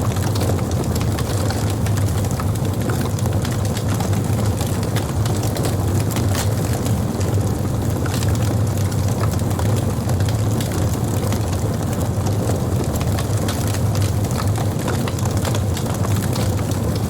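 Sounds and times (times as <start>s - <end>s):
burning wood crackling: 0.0s - 17.0s
fire low rumble: 0.0s - 17.0s.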